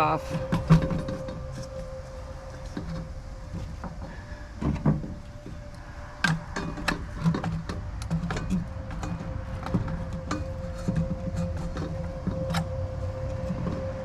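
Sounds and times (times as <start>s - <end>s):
metallic clicks and knocks: 3.8s - 14.0s.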